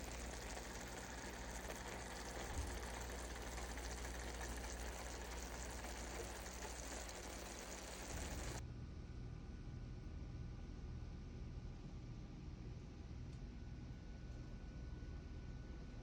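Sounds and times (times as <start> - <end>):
chicken sizzling in a skillet: 0.0 - 8.6.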